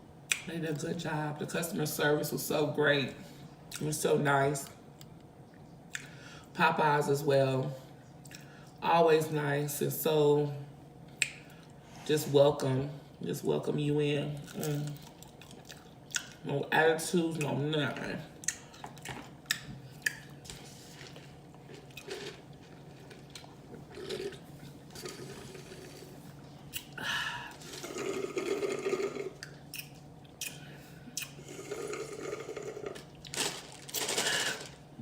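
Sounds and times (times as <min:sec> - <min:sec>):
chewing and lip smacking: 0:14.4 - 0:16.4, 0:18.4 - 0:20.4, 0:29.4 - 0:31.4
slurping sips of drink: 0:23.9 - 0:26.2.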